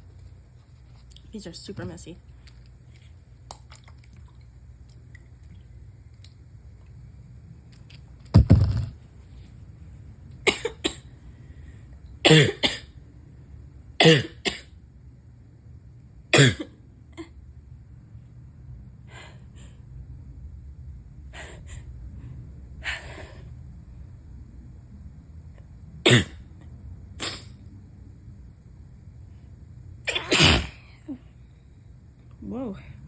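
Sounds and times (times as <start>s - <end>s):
person sneezing: 12.3s - 12.9s, 26.1s - 26.4s, 27.2s - 27.5s, 30.1s - 30.9s.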